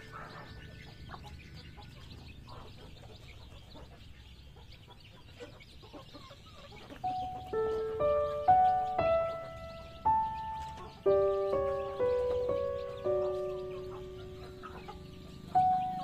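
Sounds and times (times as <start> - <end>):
chickens clucking: 0.0 - 16.0
low steady background noise: 0.0 - 16.0.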